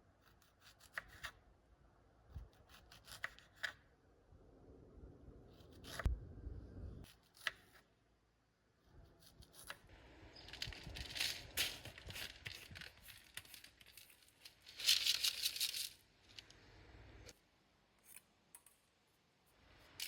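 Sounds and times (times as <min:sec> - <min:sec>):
rustling and crinkling handling: 0:10.3 - 0:16.6.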